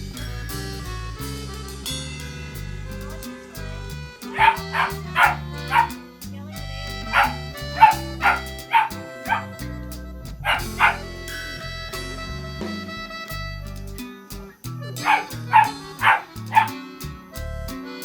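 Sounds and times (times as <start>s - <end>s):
background music: 0.0s - 18.0s
dog barking: 4.4s - 5.9s, 8.2s - 9.4s, 10.5s - 11.0s, 16.0s - 16.8s.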